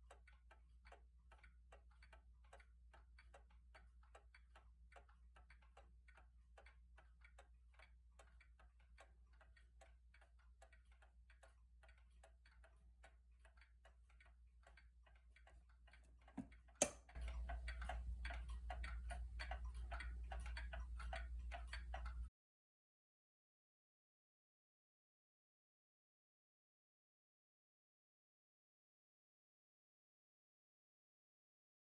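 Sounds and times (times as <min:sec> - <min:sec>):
mantel clock ticking: 0:00.0 - 0:22.3.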